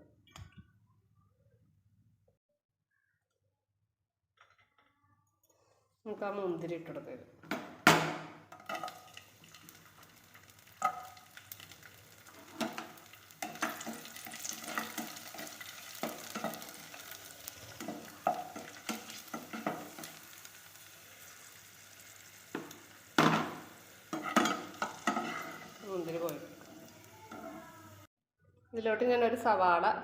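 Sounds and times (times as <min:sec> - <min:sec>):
raisins sizzling in hot fat: 0:08.5 - 0:28.1.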